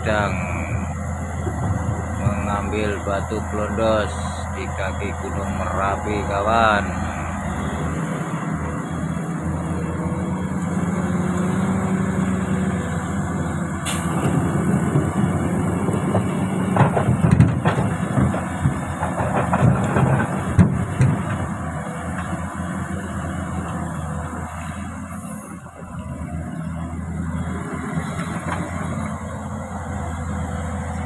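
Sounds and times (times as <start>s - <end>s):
excavator engine running: 0.0s - 31.0s
rocks clanking against bucket: 16.0s - 21.5s.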